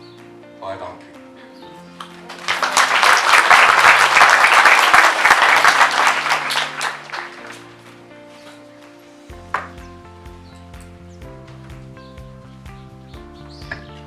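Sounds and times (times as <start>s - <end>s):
background music: 0.0s - 14.0s
audience applauding: 0.2s - 9.3s.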